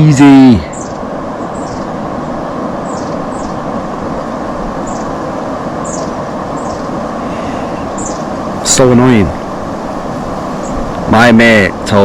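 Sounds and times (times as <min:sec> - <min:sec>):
steady rushing noise: 0:00.0 - 0:12.0
small bird chirping: 0:00.7 - 0:01.9, 0:02.8 - 0:03.6, 0:05.8 - 0:08.4.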